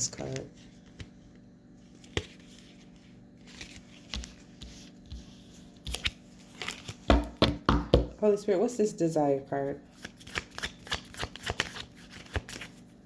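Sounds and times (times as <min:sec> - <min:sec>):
cards shuffled by hand: 0:00.0 - 0:07.4, 0:09.9 - 0:12.8
soft card snaps and rustles: 0:00.1 - 0:07.2, 0:09.9 - 0:12.8.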